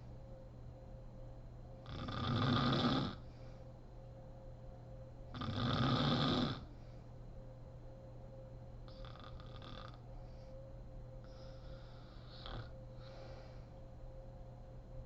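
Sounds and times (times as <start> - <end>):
woman snoring: 1.8 - 3.2, 5.4 - 6.7, 8.9 - 10.0, 11.4 - 12.7.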